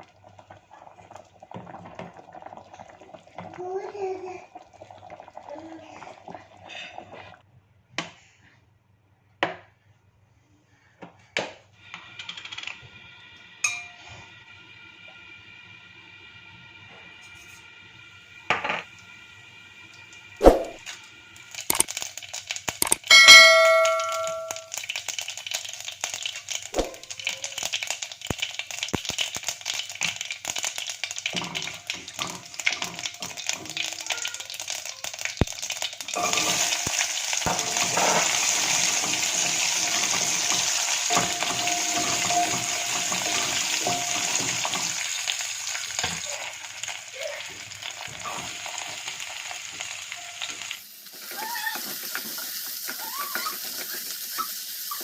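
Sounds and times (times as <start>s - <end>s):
food sizzling in hot oil: 11.8s - 55.0s.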